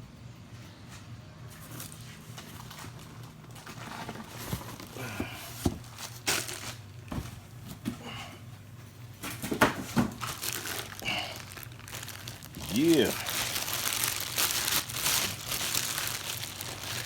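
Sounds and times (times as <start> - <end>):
low steady hum: 0.0 - 17.0
packaging crinkling and rustling: 1.6 - 7.2, 9.2 - 17.0.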